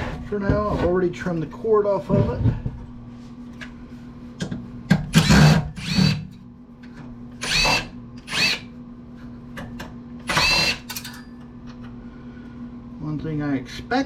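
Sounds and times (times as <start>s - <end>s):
power drill whirring: 5.1s - 6.2s, 7.4s - 8.7s, 10.3s - 10.9s.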